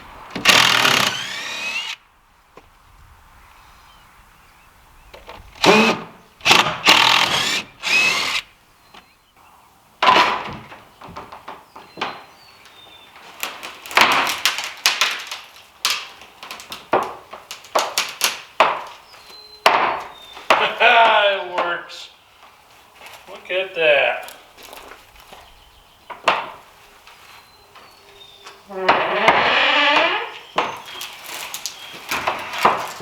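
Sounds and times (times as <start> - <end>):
power drill running: 0.4 - 2.0, 5.6 - 8.5.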